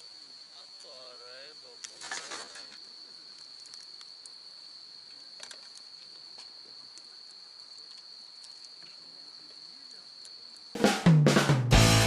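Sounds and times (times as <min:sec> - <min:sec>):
crickets trilling: 0:00.0 - 0:11.1
faint clicks: 0:05.4 - 0:10.7.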